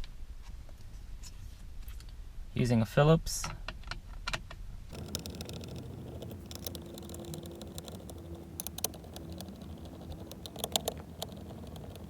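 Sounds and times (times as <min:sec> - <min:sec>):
screwdriver clicks and taps: 0:04.9 - 0:12.0.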